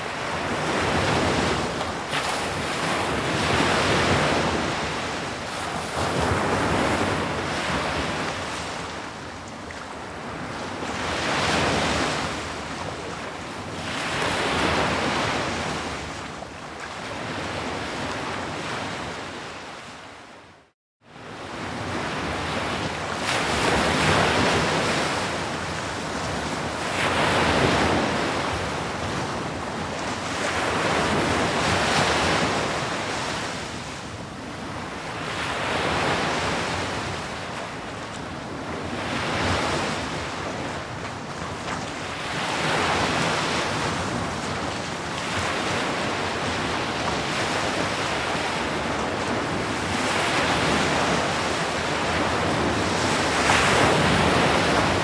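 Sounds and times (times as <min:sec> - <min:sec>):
sea waves breaking on shore: 0:21.3 - 0:55.0.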